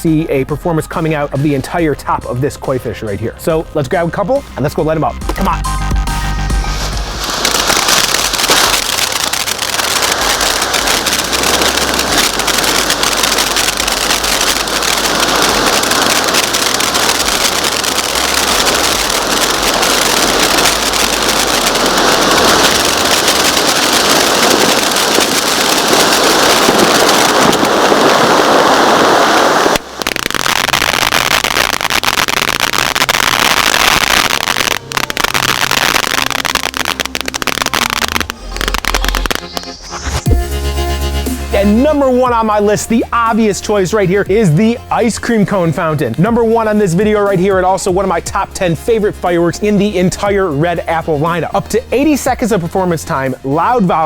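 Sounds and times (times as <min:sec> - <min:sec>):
firework fountain hissing and crackling: 0:06.6 - 0:40.8.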